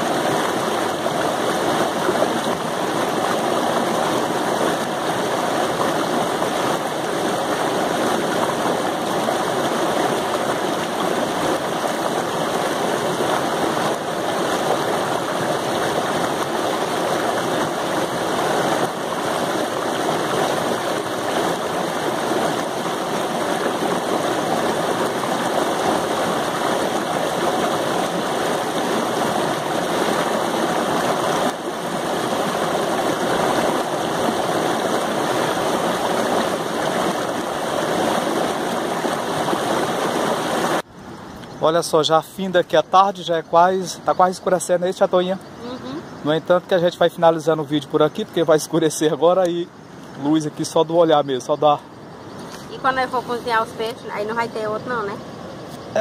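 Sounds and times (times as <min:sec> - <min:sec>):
waterfall rushing: 0:00.0 - 0:40.9.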